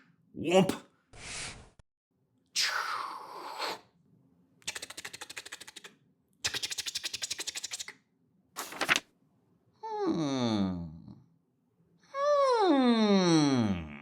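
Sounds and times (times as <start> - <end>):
rapid cartoon clicking: 4.6 - 5.9, 6.5 - 8.0.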